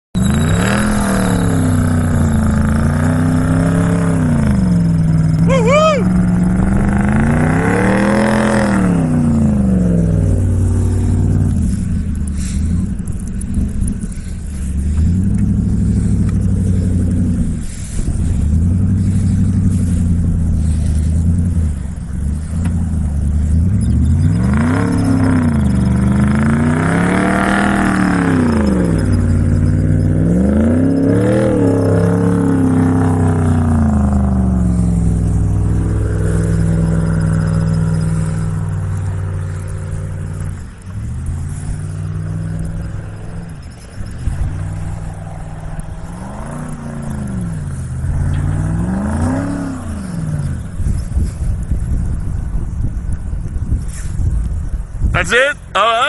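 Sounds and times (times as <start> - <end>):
truck engine revving: 0.2 - 53.2.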